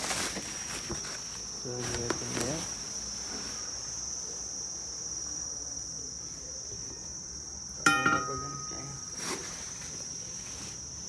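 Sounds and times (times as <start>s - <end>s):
insect drone: 0.0s - 11.0s
metal rim clanking: 7.9s - 9.1s.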